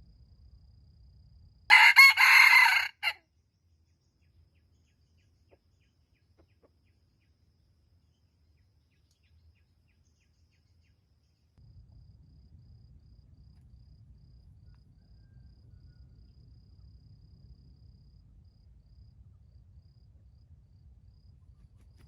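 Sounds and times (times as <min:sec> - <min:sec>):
rooster crowing: 0:01.7 - 0:03.2, 0:14.9 - 0:16.1.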